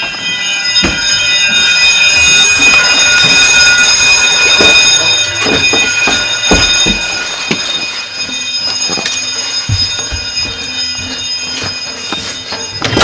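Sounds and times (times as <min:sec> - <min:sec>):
fire alarm buzzing: 0:00.0 - 0:13.0
dull knocks: 0:05.4 - 0:07.7.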